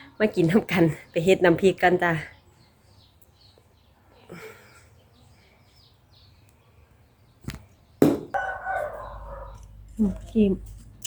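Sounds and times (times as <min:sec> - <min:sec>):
sharp knocks: 0:08.0 - 0:08.4.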